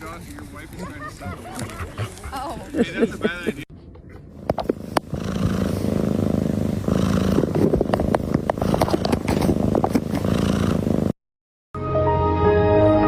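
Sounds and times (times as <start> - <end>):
cat purring: 4.4 - 11.2.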